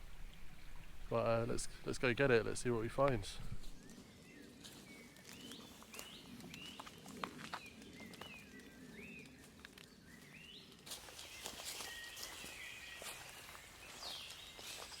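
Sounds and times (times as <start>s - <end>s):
birds singing whistled phrases: 11.3s - 15.0s.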